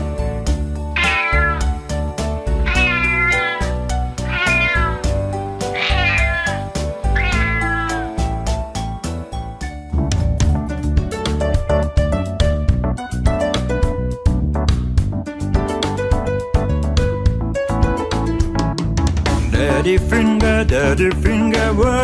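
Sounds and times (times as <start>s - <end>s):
children's music with beat: 0.0s - 22.0s
cat meowing: 0.9s - 8.4s.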